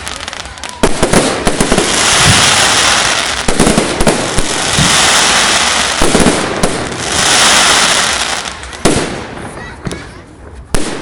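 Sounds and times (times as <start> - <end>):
fireworks bangs and pops: 0.0 - 11.0
fireworks crackling hiss: 0.0 - 11.0.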